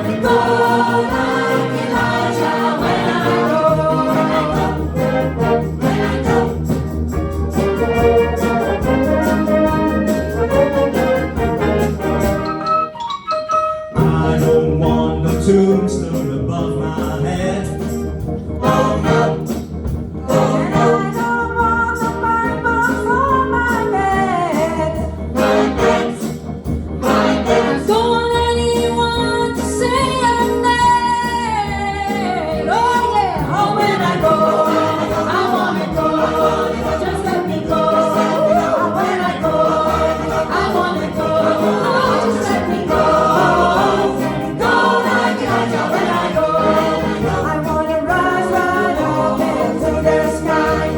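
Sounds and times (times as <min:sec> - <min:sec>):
choir singing in harmony: 0:00.0 - 0:12.6, 0:14.0 - 0:16.3, 0:18.5 - 0:21.8, 0:25.2 - 0:28.1, 0:33.4 - 0:50.9.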